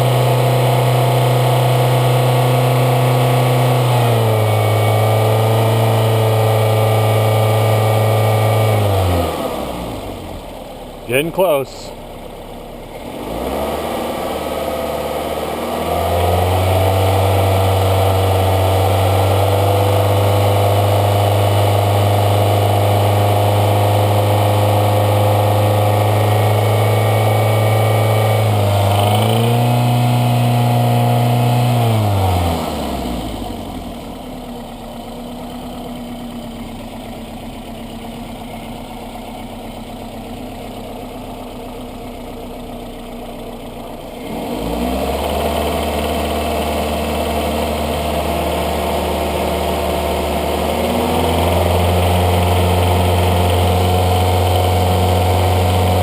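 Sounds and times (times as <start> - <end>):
car engine revving and idling: 0.0 - 56.0.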